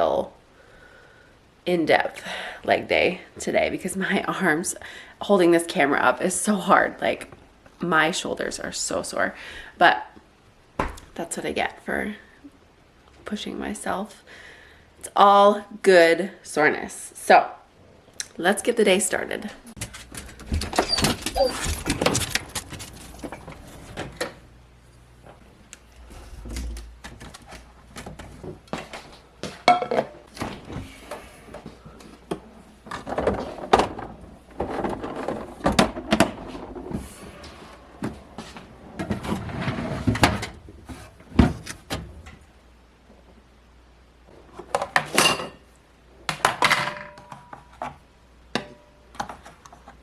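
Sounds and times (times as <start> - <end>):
household knocks and clatter: 19.8 - 24.4, 25.9 - 42.4
doors opening and closing: 19.8 - 24.6, 25.2 - 28.7.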